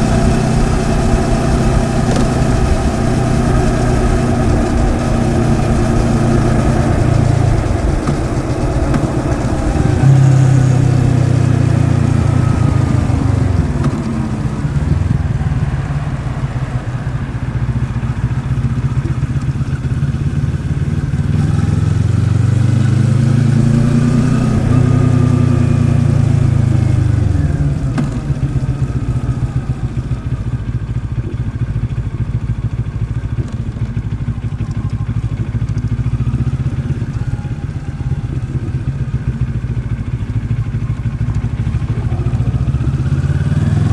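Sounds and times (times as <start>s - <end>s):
motorcycle engine revving: 0.0s - 43.9s.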